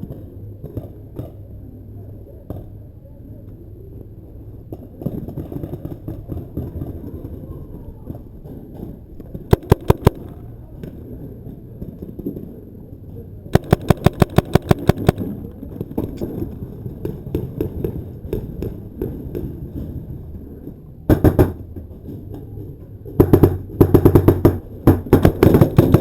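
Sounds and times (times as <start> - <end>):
paintball markers firing: 9.5 - 10.4, 13.6 - 15.4, 21.1 - 21.6, 23.2 - 26.0.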